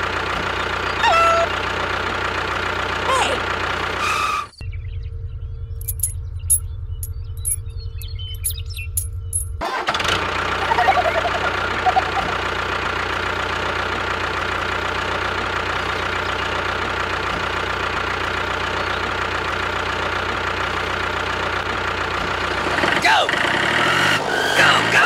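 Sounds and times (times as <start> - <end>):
engine chugging: 0.0 - 25.0
wavering higher tones: 10.6 - 12.5.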